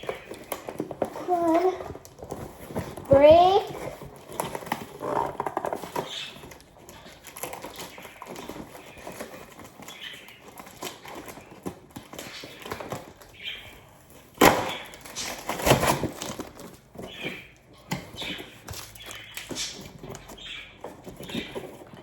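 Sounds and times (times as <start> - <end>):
crackling and scraping: 0.0 - 22.0
cardboard being torn: 14.3 - 17.2.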